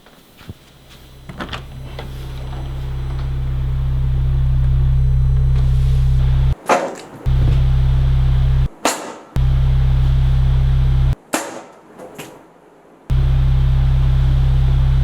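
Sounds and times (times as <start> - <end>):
low electrical hum: 0.0 - 8.8.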